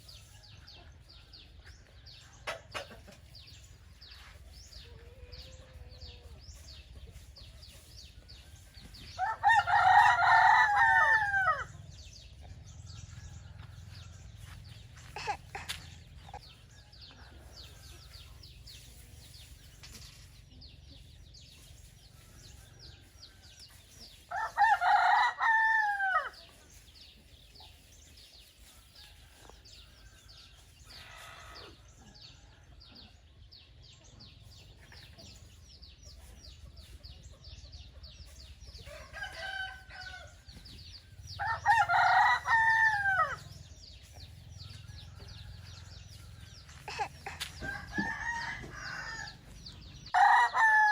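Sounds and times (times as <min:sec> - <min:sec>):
rooster crowing: 0:09.2 - 0:11.7, 0:24.3 - 0:26.3, 0:41.4 - 0:43.5, 0:47.6 - 0:49.5, 0:50.1 - 0:50.9
faint rooster call: 0:46.7 - 0:49.5.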